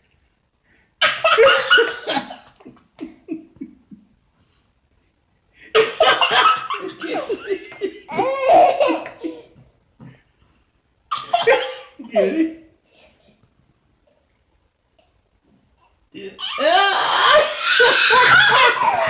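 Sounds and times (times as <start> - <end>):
person laughing: 5.8 - 9.6.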